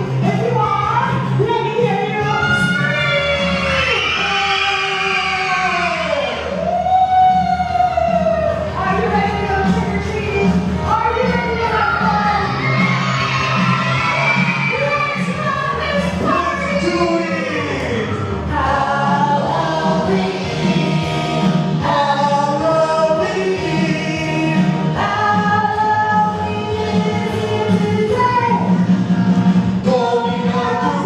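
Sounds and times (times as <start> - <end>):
musical accompaniment: 5.6 - 31.0
voices singing: 7.4 - 28.7, 29.7 - 31.0.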